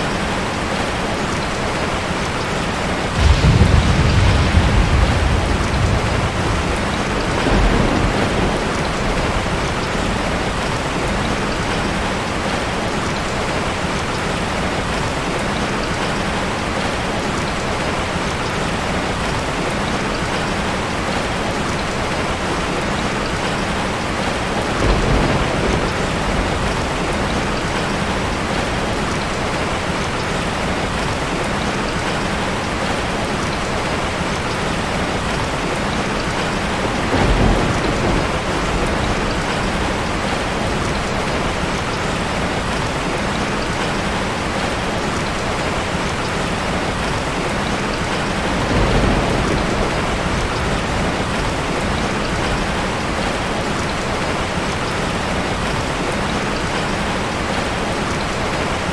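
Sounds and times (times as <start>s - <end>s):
heavy rain falling: 0.0s - 58.9s
distant thunder rumbling: 3.0s - 12.6s, 24.0s - 29.4s, 35.4s - 43.9s, 46.8s - 54.0s.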